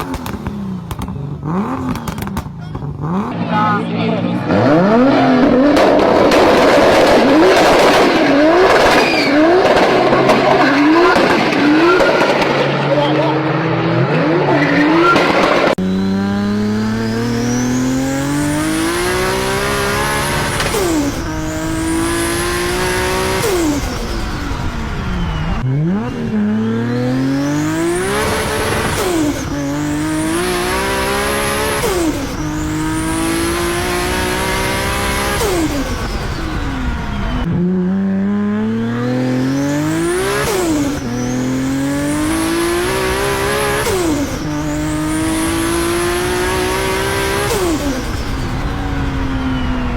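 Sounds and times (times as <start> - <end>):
car engine accelerating: 0.0 - 49.9.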